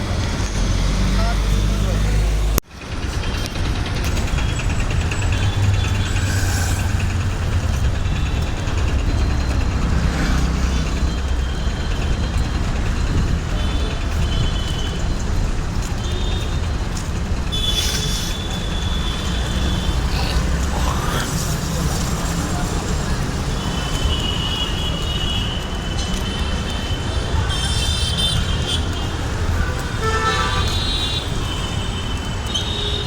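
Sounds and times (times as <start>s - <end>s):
traffic engines rumbling: 0.0s - 33.0s
air brakes hiss and squeal: 5.8s - 7.7s, 17.6s - 21.9s.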